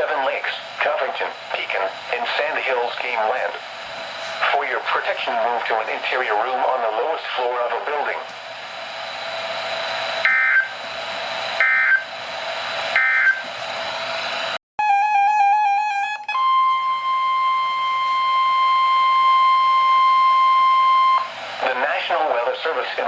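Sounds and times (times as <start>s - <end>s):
steady single-pitch warning tone: 9.2s - 13.5s, 16.4s - 21.4s
digital data bursts: 10.2s - 10.8s, 11.6s - 12.1s, 13.0s - 13.4s
warble of data tones: 10.2s - 10.9s, 11.5s - 12.2s, 12.8s - 13.4s.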